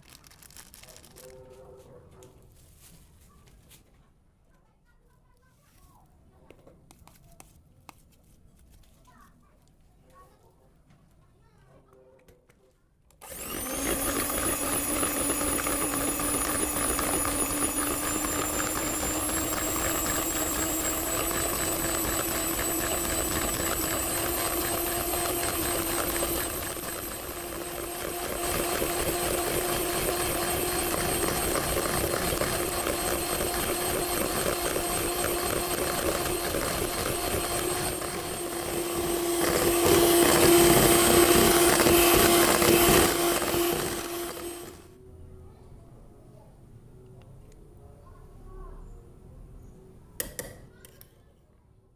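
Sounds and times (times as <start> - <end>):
electric motor appliance whining: 13.2 - 45.0.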